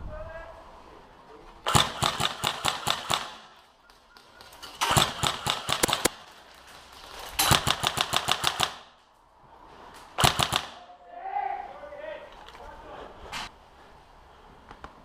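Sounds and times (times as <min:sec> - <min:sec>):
airsoft rifle firing bursts: 0:01.7 - 0:03.6, 0:04.8 - 0:06.2, 0:07.4 - 0:08.9, 0:10.2 - 0:10.8.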